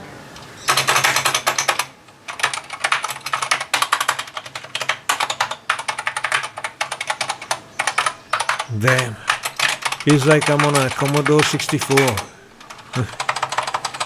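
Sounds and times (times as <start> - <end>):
mechanical keyboard key clacks: 9.3 - 14.0.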